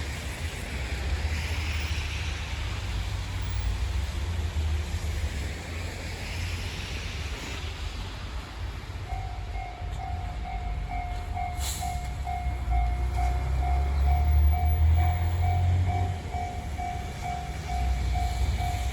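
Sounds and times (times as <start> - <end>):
crossing warning bell ringing: 9.0 - 18.9
low vehicle rumble: 9.1 - 18.9
short hiss: 11.6 - 12.2.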